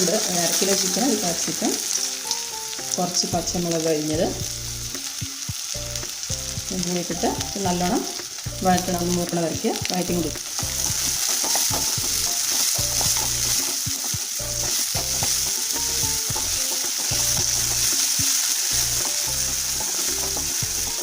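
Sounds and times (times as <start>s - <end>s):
vegetables sizzling in hot oil: 0.0s - 21.0s
spatula scraping a pan: 10.0s - 21.0s.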